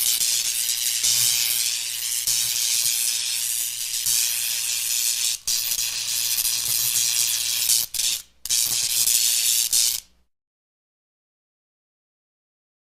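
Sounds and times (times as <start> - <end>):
electric crackling hiss: 0.0 - 10.0.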